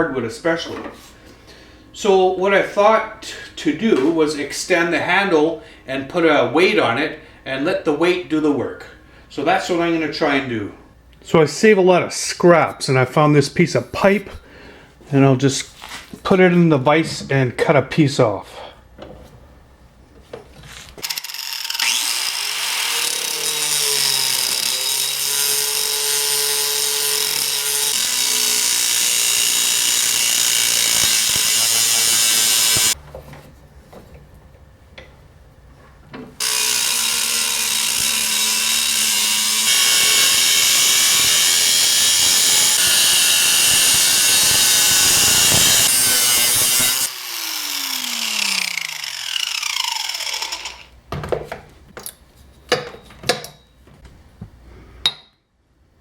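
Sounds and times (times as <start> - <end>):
power tool cutting pipe: 21.0 - 33.0, 36.4 - 50.9.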